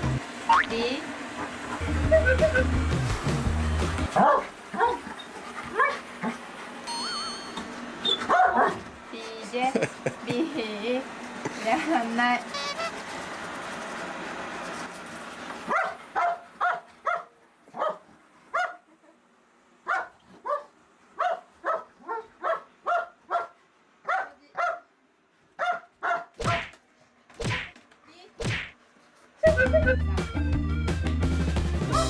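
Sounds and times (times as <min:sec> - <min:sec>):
dog barking: 0:04.1 - 0:05.1, 0:05.7 - 0:06.0, 0:08.2 - 0:08.8, 0:15.7 - 0:18.8, 0:19.8 - 0:24.9, 0:25.6 - 0:26.7
robot vacuum motor drone: 0:09.8 - 0:15.7.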